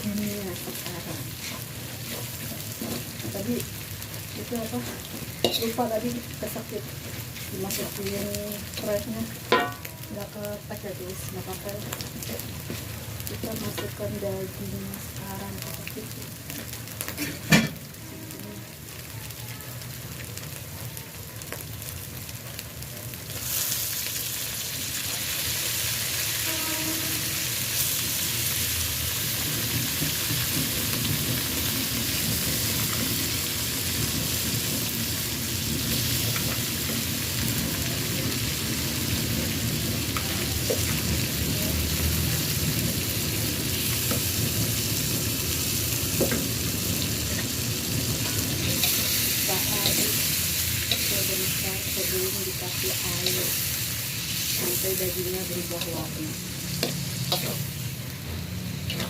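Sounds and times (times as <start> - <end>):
beef sizzling in a wok: 0.0 - 59.0
spatula stirring in a wok: 0.1 - 9.9, 21.9 - 59.0.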